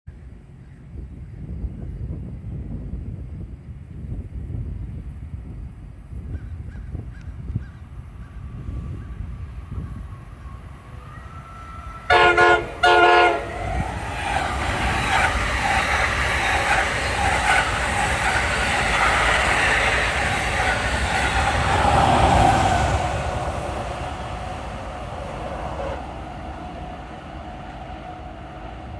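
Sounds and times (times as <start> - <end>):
train wheel and rail noise: 0.2 - 28.9
train horn blasts: 11.8 - 14.1.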